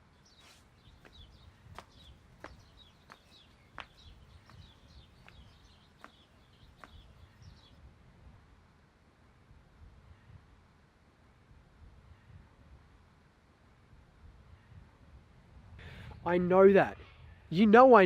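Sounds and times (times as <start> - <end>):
faint birds chirping: 0.0 - 7.8.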